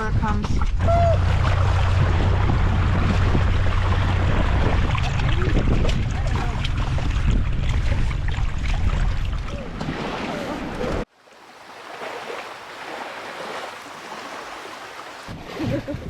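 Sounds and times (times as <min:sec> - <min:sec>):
small boat motor humming: 0:00.0 - 0:09.8
water noise: 0:00.0 - 0:16.0
wind: 0:00.0 - 0:16.0.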